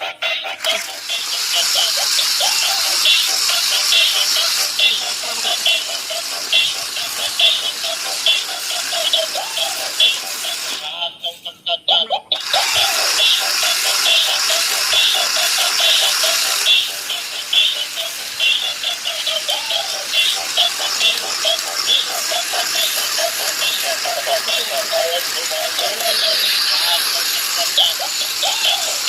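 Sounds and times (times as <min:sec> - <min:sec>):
electronic music: 0:12.4 - 0:29.0.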